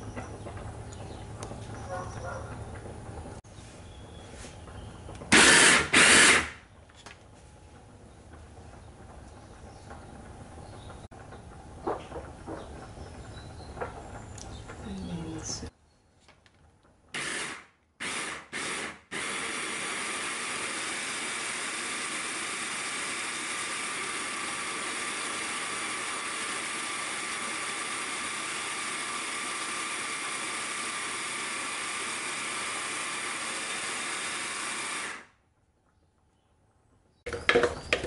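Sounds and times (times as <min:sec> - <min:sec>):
electric blender running: 0:05.3 - 0:06.6, 0:17.2 - 0:35.4.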